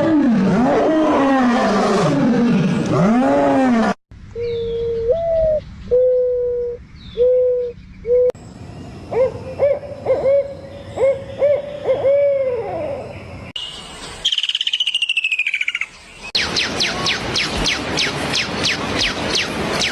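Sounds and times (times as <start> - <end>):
low hooting animal calls: 9.1 - 13.2.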